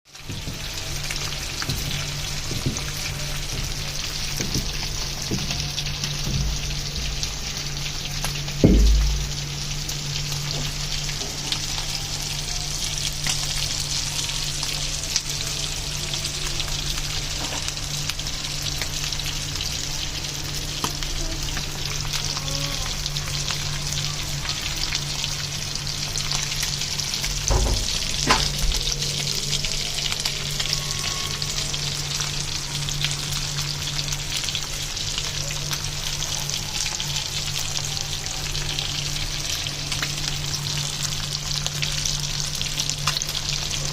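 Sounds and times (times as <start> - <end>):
fish sizzling in hot oil: 0.1 - 43.9
thump: 8.6 - 9.4, 27.4 - 28.6
knocks: 8.6 - 9.5, 27.4 - 28.6.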